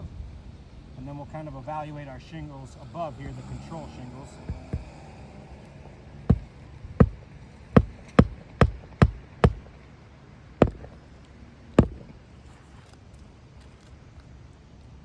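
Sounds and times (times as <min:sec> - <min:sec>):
hammer striking roofing nails: 0:06.3 - 0:07.2, 0:07.8 - 0:09.7, 0:10.6 - 0:11.0, 0:11.8 - 0:12.2.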